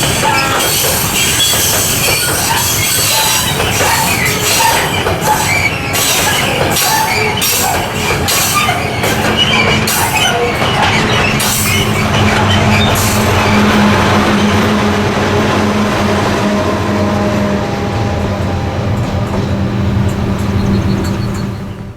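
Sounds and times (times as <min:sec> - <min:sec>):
wheel squeal: 0:00.0 - 0:13.8, 0:20.2 - 0:21.9
train wheels clattering over rail joints: 0:00.0 - 0:14.8
diesel locomotive engine drone: 0:00.0 - 0:21.9.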